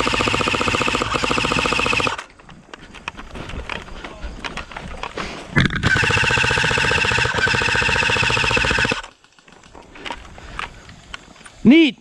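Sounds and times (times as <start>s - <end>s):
pulsing electronic alarm tone: 5.6s - 9.1s.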